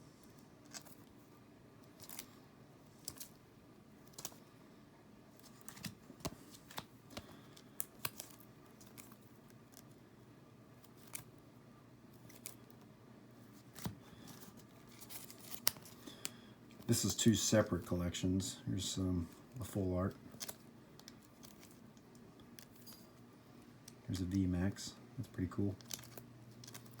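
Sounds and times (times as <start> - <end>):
trading cards clicking and snapping: 4.1 - 4.4, 5.4 - 9.9, 13.6 - 16.9, 20.3 - 22.9, 25.3 - 27.0.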